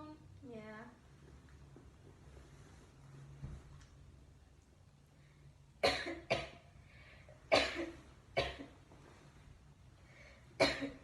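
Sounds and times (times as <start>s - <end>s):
person coughing: 5.8s - 6.6s, 7.5s - 8.7s, 10.6s - 11.0s.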